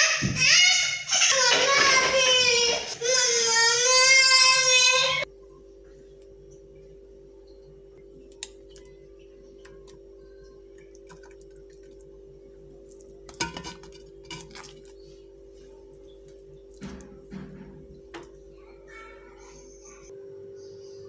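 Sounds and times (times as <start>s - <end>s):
steady low hum: 4.6s - 21.0s.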